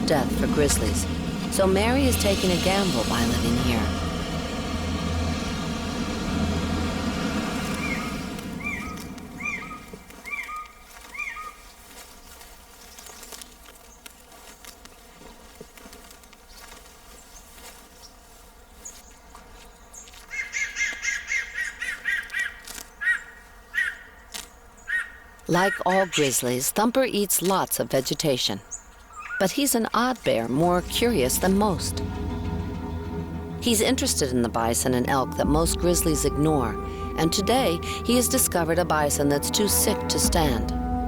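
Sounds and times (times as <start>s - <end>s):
low rumble: 0.0s - 10.4s, 30.3s - 41.0s
faint steady background drone: 0.0s - 11.3s, 29.5s - 41.0s
songbird chirping: 0.0s - 15.1s, 16.4s - 41.0s.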